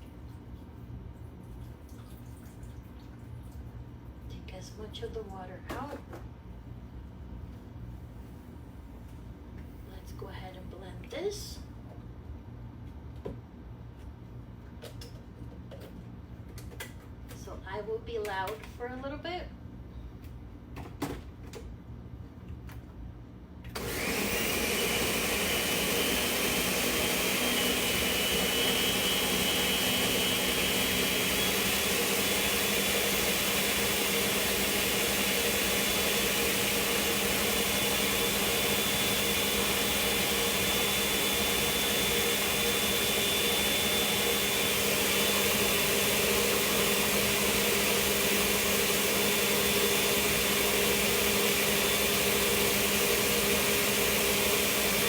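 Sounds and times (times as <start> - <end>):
blender running loudly: 23.8 - 55.0.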